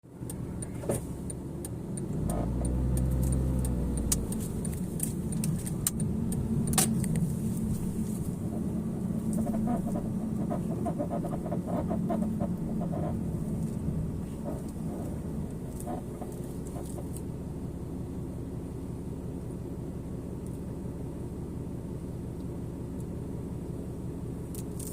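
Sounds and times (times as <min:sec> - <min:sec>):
low vehicle hum: 0:00.0 - 0:24.9
car creaks and clicks: 0:00.2 - 0:17.3, 0:24.5 - 0:24.9.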